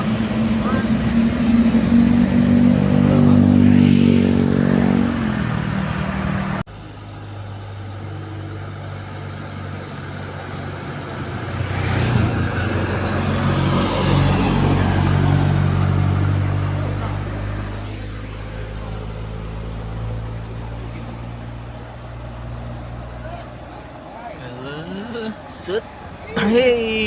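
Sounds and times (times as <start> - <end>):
rush of air and tyre noise: 0.0 - 6.7
diesel bus engines: 0.0 - 27.0.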